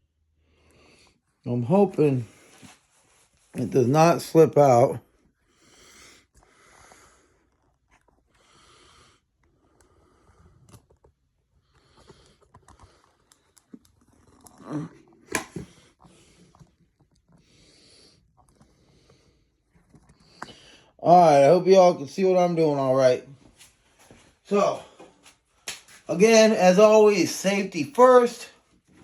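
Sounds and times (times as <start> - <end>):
faint breathing: 5.3 - 7.5, 8.3 - 10.7, 17.4 - 21.0.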